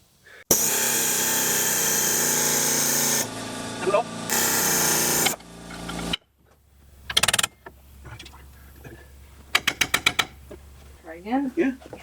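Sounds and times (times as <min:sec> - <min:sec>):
air compressor running: 0:00.5 - 0:06.2
pneumatic tool rattling: 0:00.5 - 0:06.2, 0:07.1 - 0:07.6.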